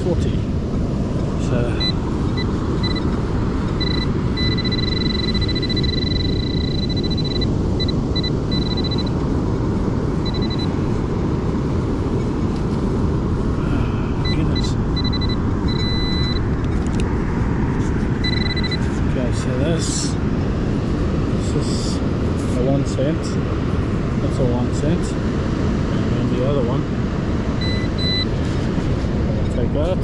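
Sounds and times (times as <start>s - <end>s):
wind and surf rumble on microphone: 0.0s - 30.0s
metal detector beeping tone: 1.8s - 9.2s, 10.2s - 10.7s, 14.2s - 16.5s, 18.2s - 18.9s, 27.6s - 28.3s.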